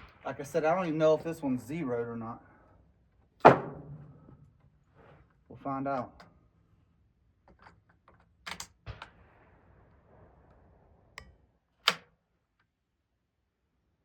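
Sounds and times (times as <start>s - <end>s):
rifle metallic clicks and knocks: 7.4s - 9.2s, 11.2s - 12.7s.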